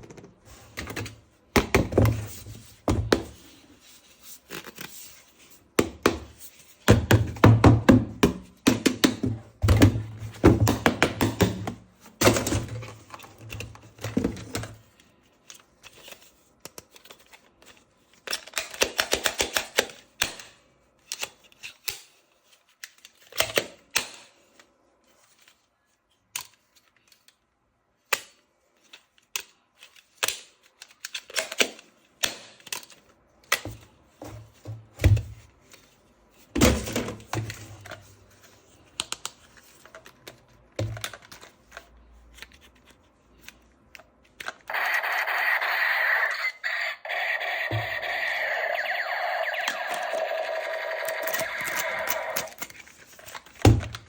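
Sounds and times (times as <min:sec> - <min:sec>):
plastic toy parts clicking: 0:15.4 - 0:22.0, 0:49.6 - 0:54.0.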